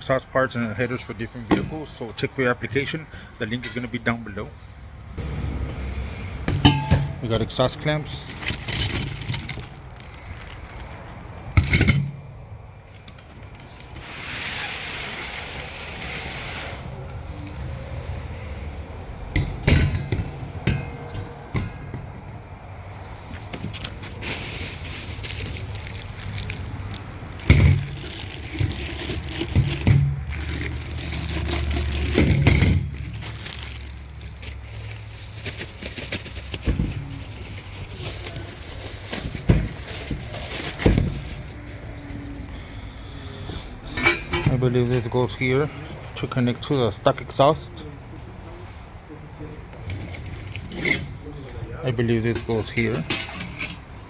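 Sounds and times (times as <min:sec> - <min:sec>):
metal hardware clinking: 0:06.4 - 0:07.4, 0:08.2 - 0:09.8, 0:11.5 - 0:12.3
metal parts knocking and clunking: 0:06.4 - 0:07.5, 0:08.1 - 0:10.0, 0:11.5 - 0:13.7, 0:19.3 - 0:22.1, 0:27.4 - 0:33.2, 0:52.4 - 0:53.9
rubbing and rustling: 0:13.5 - 0:17.9, 0:23.2 - 0:42.2.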